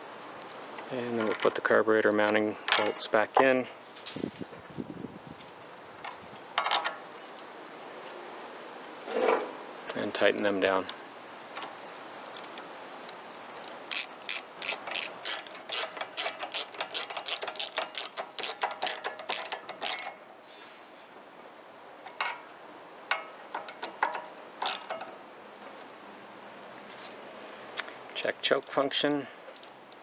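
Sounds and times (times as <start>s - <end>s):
socket ratchet clicking: 13.9s - 20.2s.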